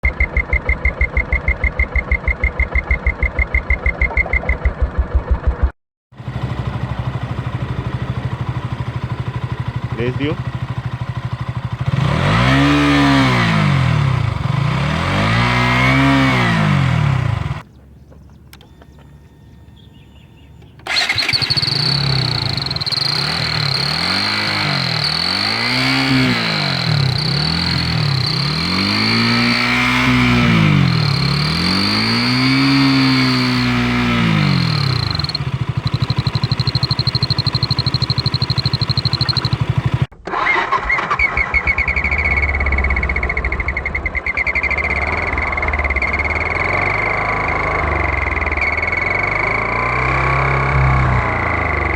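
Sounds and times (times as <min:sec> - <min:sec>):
motorcycle engine idling: 0:00.0 - 0:40.2, 0:41.2 - 0:51.9
motorcycle engine revving: 0:00.0 - 0:51.9
exhaust whistle: 0:18.6 - 0:40.1.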